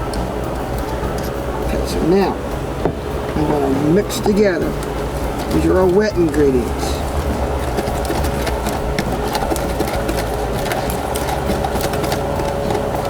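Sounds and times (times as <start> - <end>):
steady mechanical hum: 0.0 - 13.0
spoon scraping a bowl: 3.5 - 13.0.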